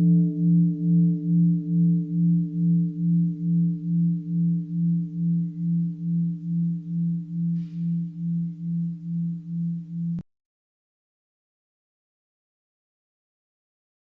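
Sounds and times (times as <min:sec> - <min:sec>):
bell ringing with pulsing hum: 0:00.0 - 0:10.2.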